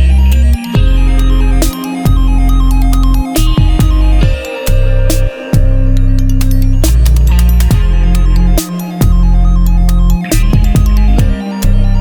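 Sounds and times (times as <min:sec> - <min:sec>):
electronic dance music: 0:06.8 - 0:12.0.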